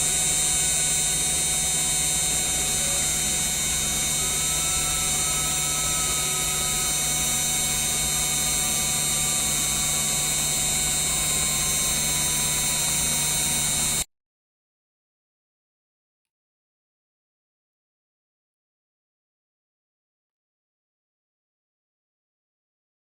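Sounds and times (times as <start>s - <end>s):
low hum: 0.0s - 14.0s
stepping motor tones: 0.0s - 14.0s
high-pitched spindle whine: 0.0s - 14.1s.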